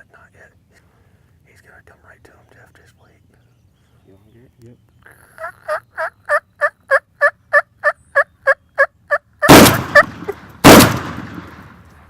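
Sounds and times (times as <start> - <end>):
turkey yelps: 5.1 - 10.1
loud gunshot: 9.5 - 11.8.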